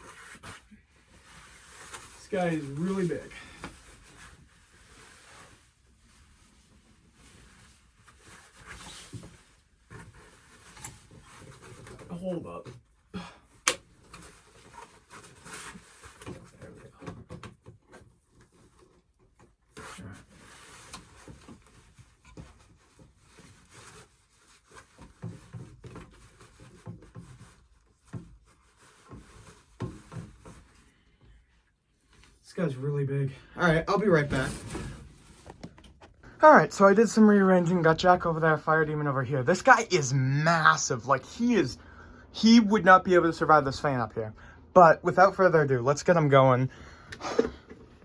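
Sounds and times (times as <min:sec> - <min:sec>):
rustling and handling of parts: 0:00.0 - 0:32.5, 0:33.7 - 0:36.3.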